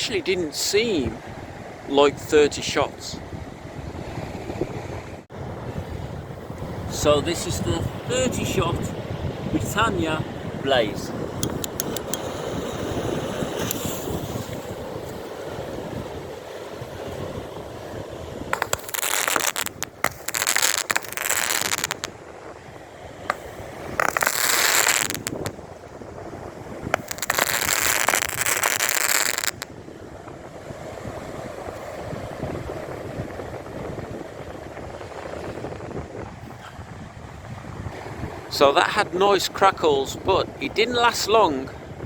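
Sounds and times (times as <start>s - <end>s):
wind on microphone: 3.1s - 38.5s, 41.4s - 42.0s
firework shots and crackling: 18.6s - 22.1s, 23.3s - 25.5s, 27.0s - 29.6s.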